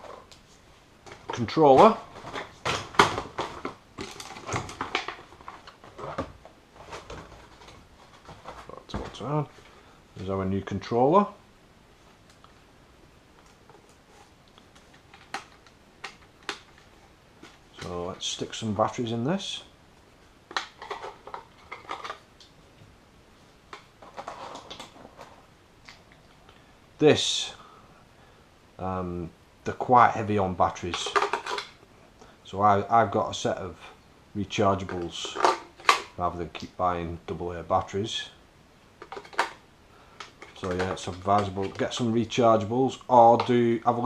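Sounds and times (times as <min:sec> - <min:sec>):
cardboard and plastic rustling: 0:00.0 - 0:09.9, 0:20.5 - 0:22.3, 0:23.7 - 0:25.5, 0:39.0 - 0:39.6, 0:40.2 - 0:44.0.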